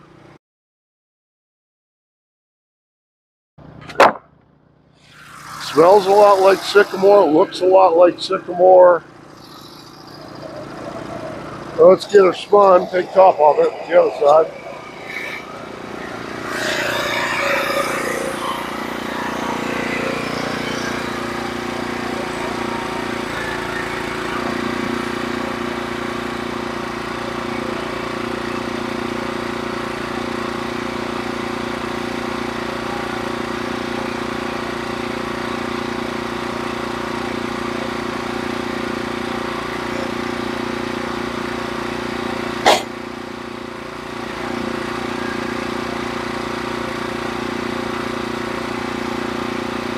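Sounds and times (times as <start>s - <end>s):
bandsaw mill sawing log: 5.0s - 49.9s.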